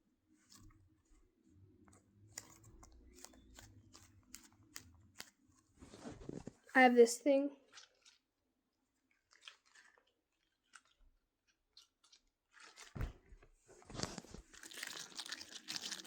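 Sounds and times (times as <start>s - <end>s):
squishy toy crunching and crackling: 2.2s - 6.4s, 7.6s - 8.3s, 8.9s - 13.0s, 14.0s - 16.0s.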